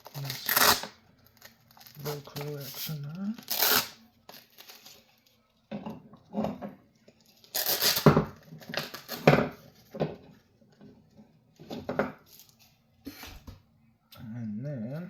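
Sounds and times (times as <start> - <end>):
plastic parts rustling and knocking: 4.3 - 12.8.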